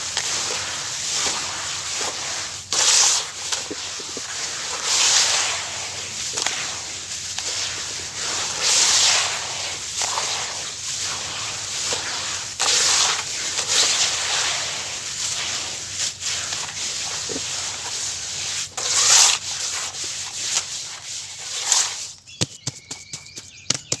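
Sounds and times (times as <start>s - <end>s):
hand squishing wet cement paste: 0.0s - 24.0s.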